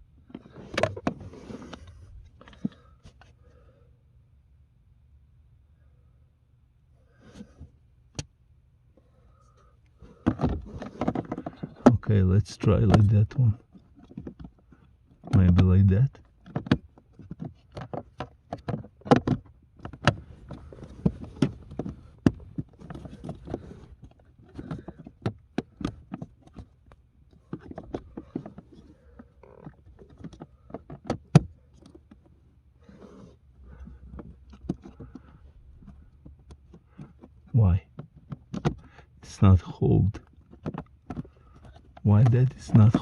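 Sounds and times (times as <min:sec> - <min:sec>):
plastic clicks and knocks: 0:10.2 - 0:12.1, 0:12.8 - 0:32.3, 0:33.7 - 0:39.0, 0:40.2 - 0:43.0.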